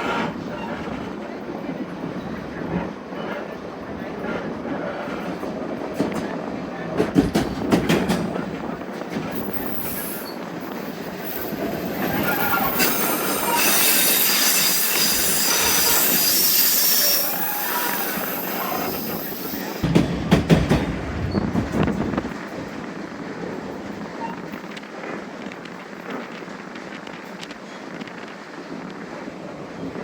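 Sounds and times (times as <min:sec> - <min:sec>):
high train wheel squeal: 0:00.0 - 0:01.4, 0:07.9 - 0:22.1, 0:24.0 - 0:24.8
wheels clacking over rail joints: 0:04.9 - 0:22.8.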